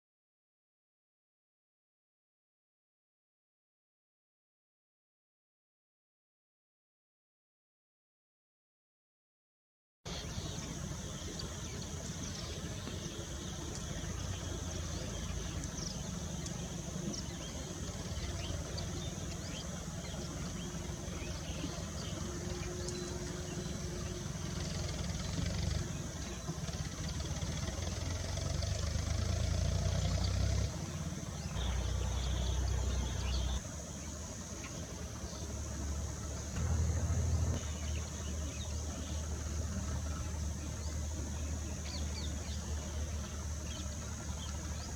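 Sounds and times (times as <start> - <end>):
vehicle engine idling: 10.1 - 44.9
bird chirps: 31.0 - 33.6.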